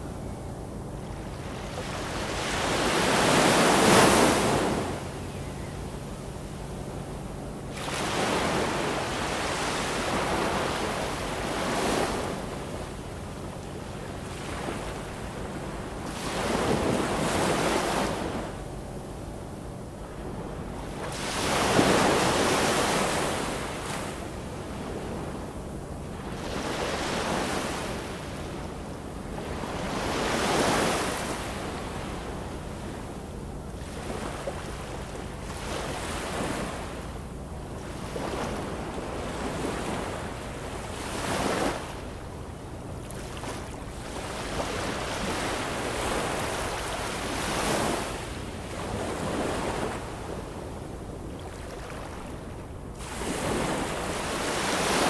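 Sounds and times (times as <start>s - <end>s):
ocean waves breaking: 7.7s - 13.0s, 20.0s - 25.4s, 33.8s - 37.2s, 37.8s - 55.0s.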